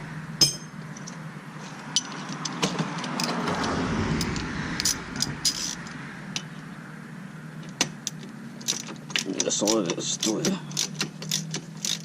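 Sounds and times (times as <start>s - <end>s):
sharp metallic knocks: 0.4s - 0.8s
metal tools clinking and tapping: 0.4s - 1.2s, 1.9s - 3.6s, 4.2s - 6.5s, 7.6s - 12.0s.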